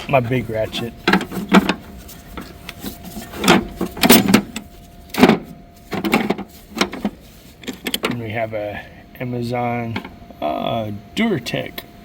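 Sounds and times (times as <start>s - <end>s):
faint steady hum: 0.0s - 12.0s
tools knocking and clanking: 1.0s - 2.5s, 3.4s - 8.2s.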